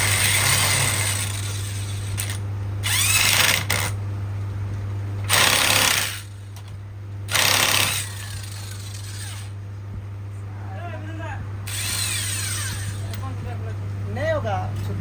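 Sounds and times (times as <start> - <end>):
power tool driving a bolt: 0.0 - 4.0, 5.3 - 6.7, 7.3 - 9.6, 11.7 - 13.3.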